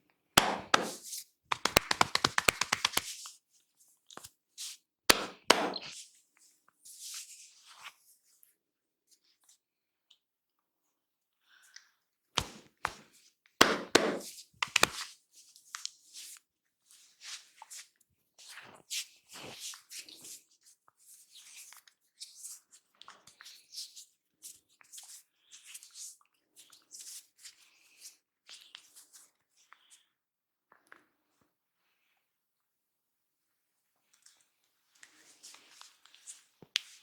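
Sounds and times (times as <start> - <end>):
hands brushing hair: 0.4 - 3.2, 5.2 - 5.9, 13.6 - 15.0
hands snapping and slapping: 0.4 - 3.2, 5.1 - 5.9, 13.6 - 15.1.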